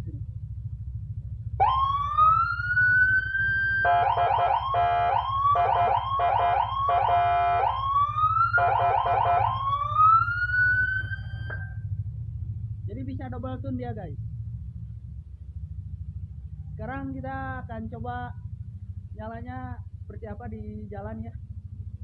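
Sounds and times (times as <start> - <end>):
steady low rumble: 0.0 - 22.0
motorcycle siren wailing: 1.6 - 11.9.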